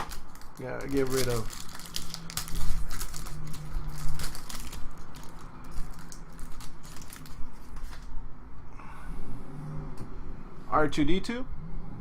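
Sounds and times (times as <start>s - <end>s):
card pack wrapper crinkling: 0.0s - 8.1s
cards rustling: 0.0s - 8.1s
low hum: 0.0s - 12.0s.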